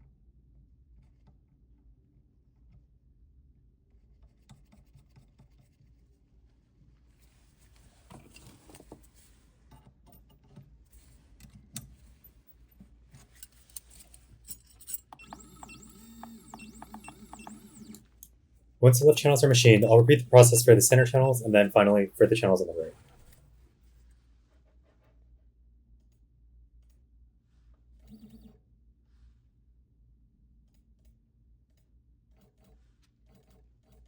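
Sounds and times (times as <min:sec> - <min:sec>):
faint clicks and scraping: 0:07.2 - 0:18.2
mill motors whining: 0:15.2 - 0:18.0.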